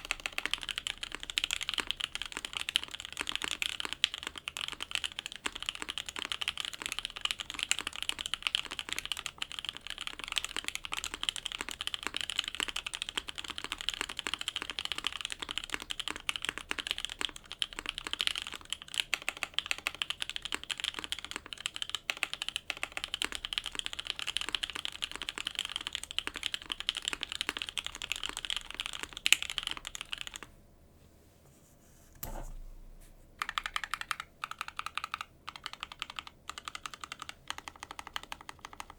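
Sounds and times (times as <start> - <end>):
mechanical keyboard typing: 0.0 - 30.5, 33.4 - 38.9.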